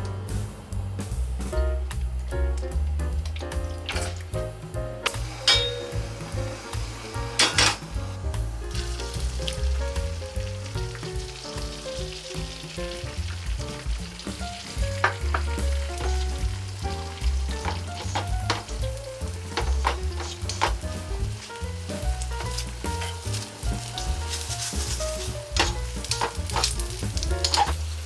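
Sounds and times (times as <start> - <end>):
egg sizzling in a pan: 5.1 - 28.0.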